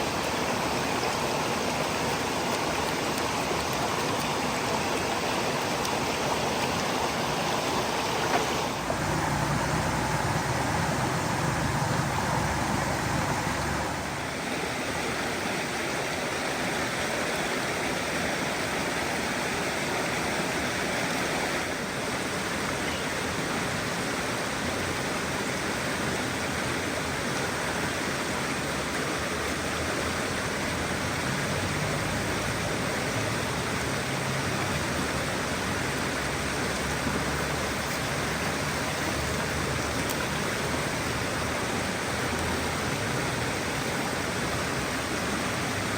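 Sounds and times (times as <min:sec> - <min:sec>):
waterfall rushing: 0:00.0 - 0:45.9.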